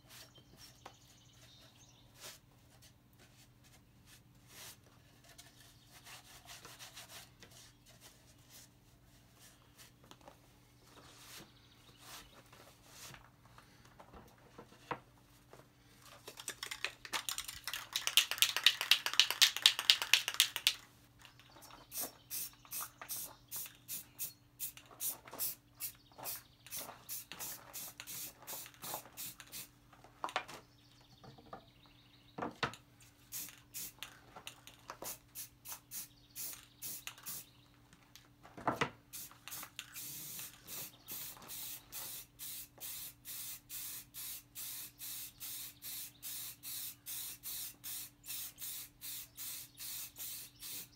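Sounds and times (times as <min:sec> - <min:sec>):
rubbing strokes: 0:02.1 - 0:09.9.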